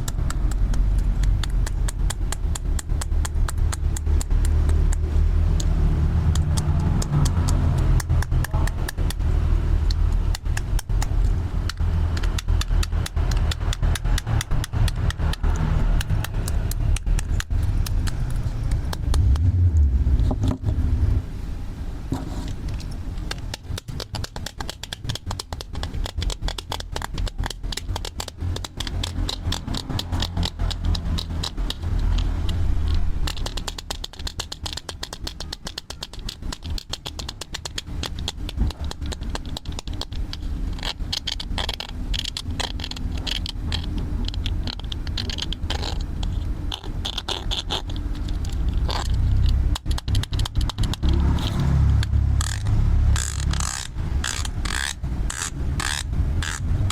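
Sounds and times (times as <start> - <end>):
plastic toy tools clicking and rattling: 0.0 - 19.5, 22.5 - 56.9
low rumble: 14.1 - 23.1.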